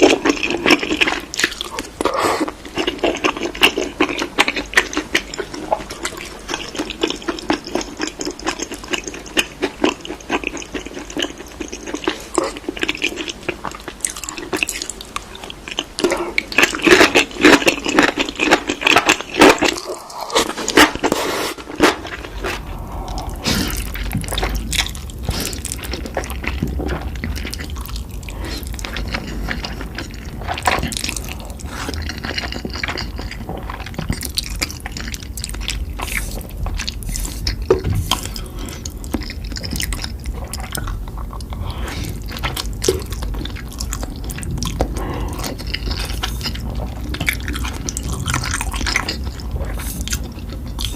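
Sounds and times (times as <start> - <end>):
wet chewing and mouth smacking: 0.0 - 50.9.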